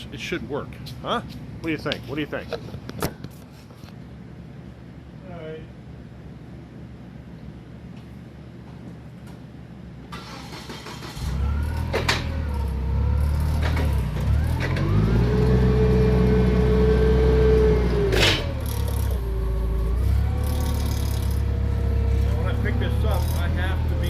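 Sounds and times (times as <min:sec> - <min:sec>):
forklift engine revving: 0:10.1 - 0:24.0
steady whine: 0:17.8 - 0:24.0.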